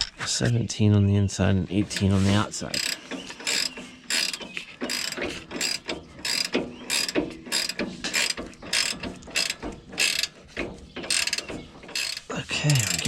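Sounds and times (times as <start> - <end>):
ratcheting wrench clicking: 2.7 - 13.0.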